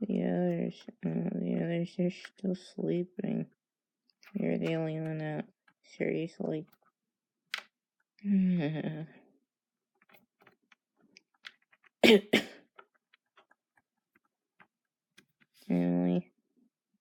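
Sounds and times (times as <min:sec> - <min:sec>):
person coughing: 0:12.0 - 0:12.6.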